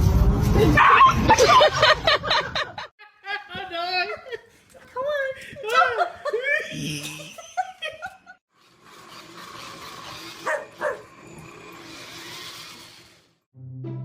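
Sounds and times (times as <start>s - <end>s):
background noise: 1.4s - 8.3s
dog barking: 10.4s - 11.1s.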